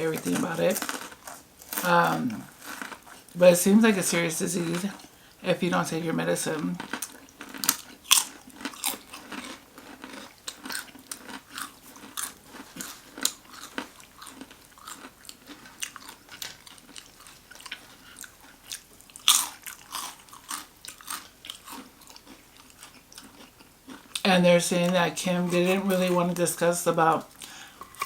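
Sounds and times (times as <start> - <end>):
person crunching a toasted sandwich: 0.2 - 3.4, 6.6 - 24.3.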